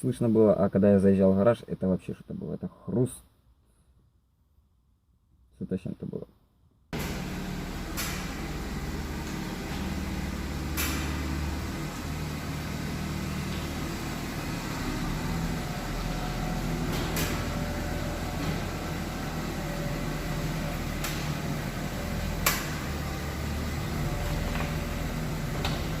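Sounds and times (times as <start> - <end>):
low rumble of car moving: 7.0 - 26.0.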